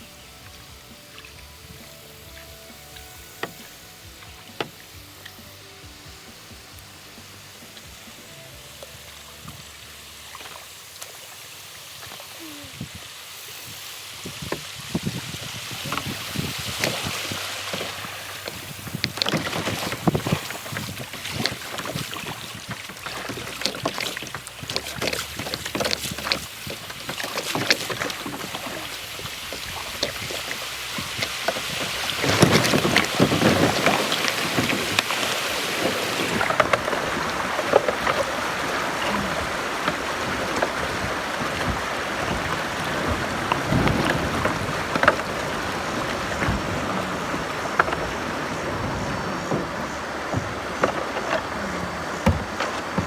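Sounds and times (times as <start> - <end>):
rushing water: 0.0 - 53.0
water splashes: 0.0 - 53.0
wind on microphone: 12.4 - 53.0.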